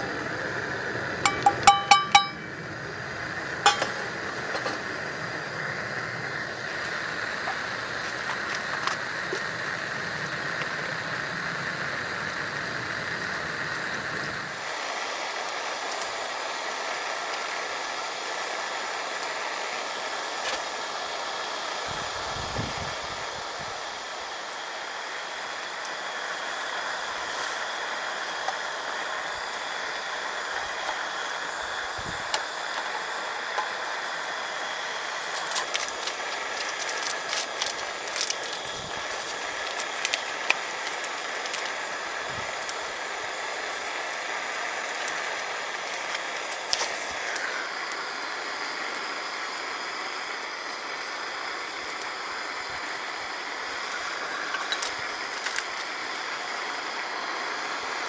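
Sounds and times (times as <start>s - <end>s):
steady outdoor hiss: 0.0s - 58.0s
metal clinking: 1.3s - 2.4s, 3.7s - 3.9s.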